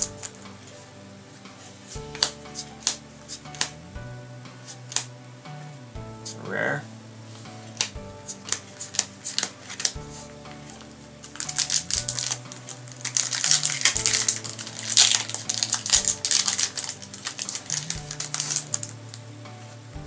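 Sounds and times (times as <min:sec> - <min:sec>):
cards and foil wrappers crackling: 0:00.0 - 0:00.9, 0:01.8 - 0:03.8, 0:04.6 - 0:05.1, 0:07.6 - 0:19.2
background music with low notes: 0:00.0 - 0:20.0.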